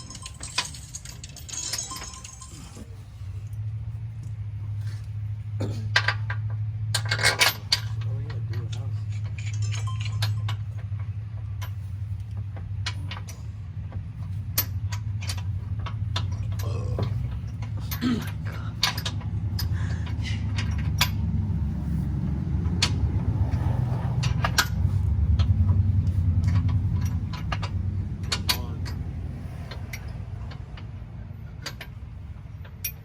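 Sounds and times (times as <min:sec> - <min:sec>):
metal tools clinking: 0:00.0 - 0:03.6, 0:07.0 - 0:10.8
steady low hum: 0:00.0 - 0:33.0.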